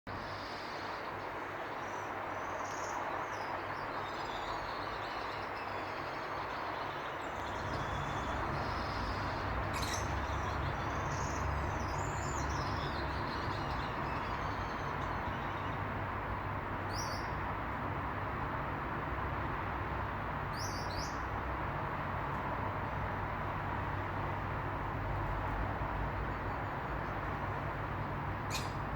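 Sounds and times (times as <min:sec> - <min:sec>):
small birds chirping: 0:00.1 - 0:15.9, 0:16.9 - 0:17.4, 0:28.4 - 0:28.9.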